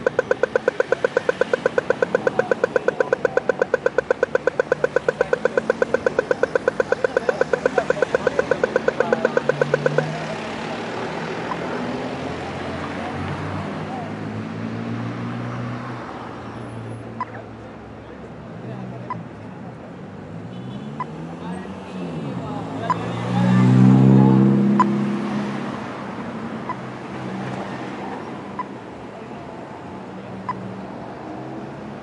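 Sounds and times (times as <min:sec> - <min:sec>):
crossing signal beeping rapidly: 0:00.0 - 0:10.3
street traffic engines: 0:00.0 - 0:32.0.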